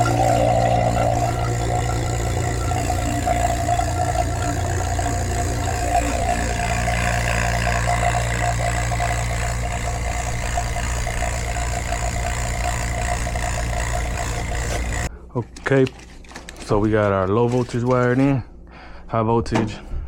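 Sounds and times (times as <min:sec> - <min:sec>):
machine motor humming: 0:00.0 - 0:15.1.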